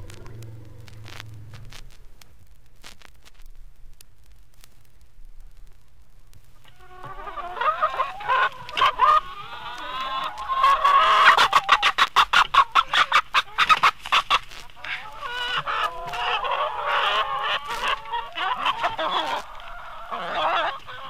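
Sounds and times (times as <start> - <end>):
chickens clucking and cackling: 6.6 - 21.0.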